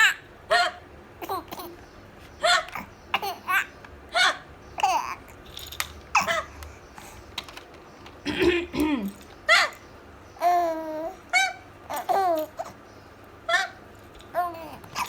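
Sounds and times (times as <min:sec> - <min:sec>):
baby babbling: 0:00.0 - 0:01.8, 0:02.4 - 0:05.4, 0:06.2 - 0:06.6, 0:10.4 - 0:12.8, 0:13.5 - 0:15.0
baby giggling: 0:00.0 - 0:01.8, 0:02.4 - 0:05.3, 0:06.2 - 0:06.6, 0:10.4 - 0:12.8.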